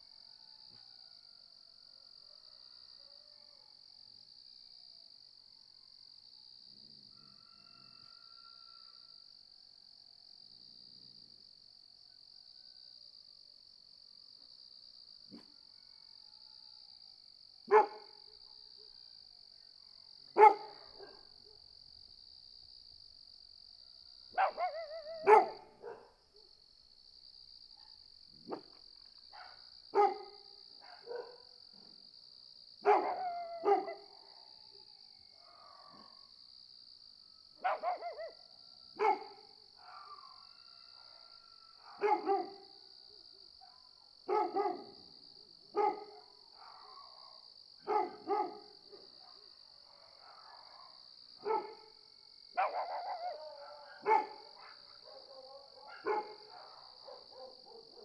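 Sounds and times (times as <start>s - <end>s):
crickets chirping: 0.0s - 58.0s
dogs barking: 17.7s - 18.0s, 20.4s - 21.2s, 24.4s - 26.1s, 29.4s - 31.4s, 32.8s - 34.1s, 37.6s - 38.4s, 39.0s - 40.4s, 41.9s - 42.6s, 44.3s - 45.0s, 45.8s - 49.5s, 50.2s - 51.8s, 52.6s - 58.0s.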